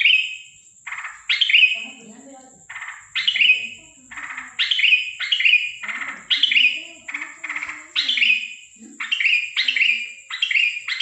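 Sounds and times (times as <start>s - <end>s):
bird giving harsh calls: 2.7s - 11.0s.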